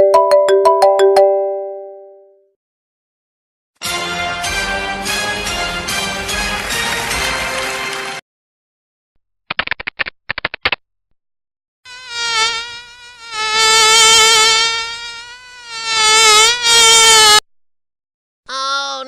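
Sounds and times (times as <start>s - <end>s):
mosquito buzzing: 11.9s - 17.4s.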